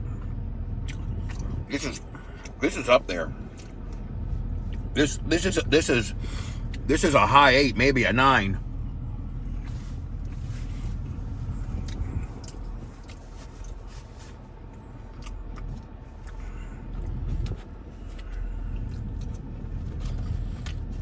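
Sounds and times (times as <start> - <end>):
man chewing: 0.0 - 5.0, 6.1 - 6.9, 9.4 - 21.0
steady low hum: 0.0 - 21.0.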